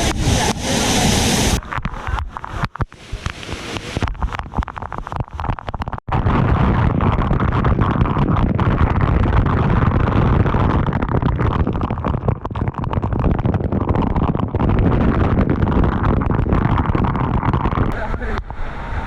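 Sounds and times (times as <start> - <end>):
waterfall rushing: 0.0 - 1.8, 2.4 - 4.0.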